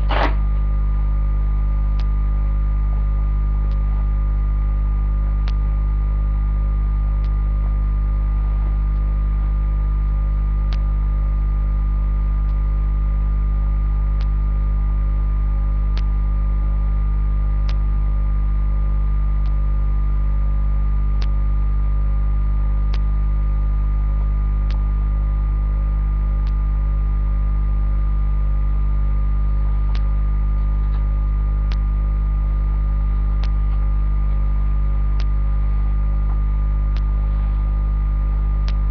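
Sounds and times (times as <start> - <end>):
electrical mains hum: 0.0 - 38.9
faint click: 14.2 - 14.4, 16.0 - 16.2.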